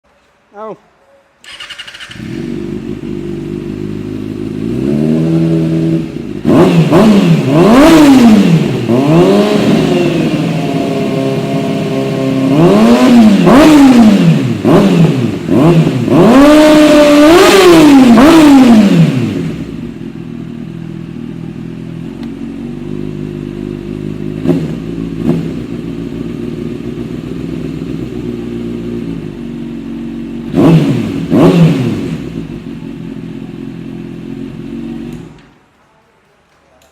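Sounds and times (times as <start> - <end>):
motorcycle engine idling: 1.4 - 6.5, 19.2 - 31.3, 32.0 - 35.4
motorcycle engine revving: 1.4 - 35.6.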